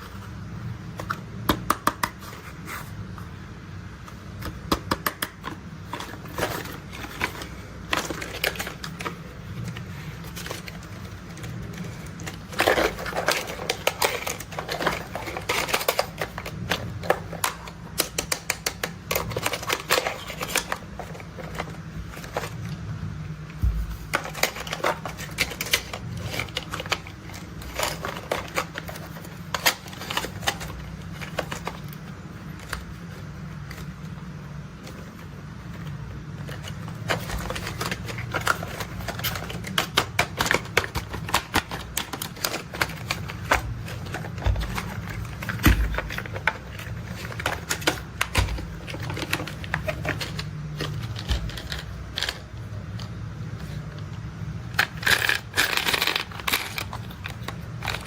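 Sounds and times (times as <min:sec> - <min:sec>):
toy vehicles tapping and clicking: 0:54.8 - 0:58.0.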